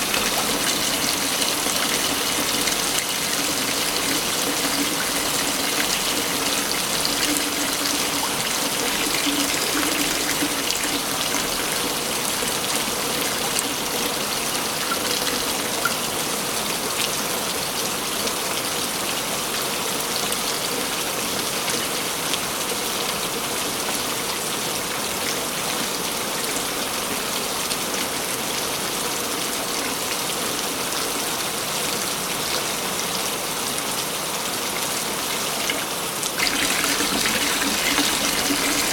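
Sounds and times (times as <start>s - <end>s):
waterfall rushing: 0.0s - 16.2s.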